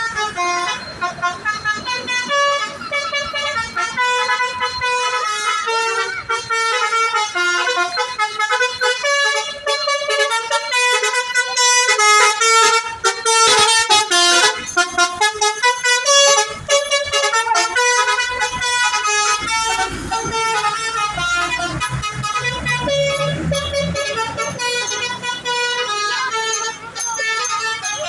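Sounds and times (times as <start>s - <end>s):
multi-tone air horn melody: 0.0s - 28.0s.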